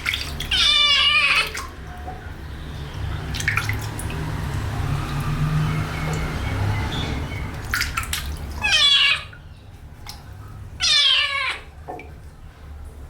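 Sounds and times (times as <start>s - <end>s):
water noise: 0.0s - 13.0s
kitten meowing: 0.5s - 1.6s, 8.6s - 9.4s, 10.8s - 11.7s.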